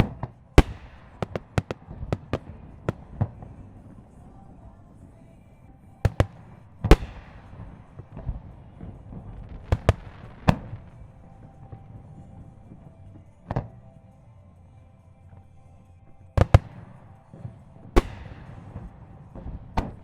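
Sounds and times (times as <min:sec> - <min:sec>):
firework shells booming: 0:00.0 - 0:05.3, 0:05.9 - 0:13.8, 0:16.3 - 0:20.0.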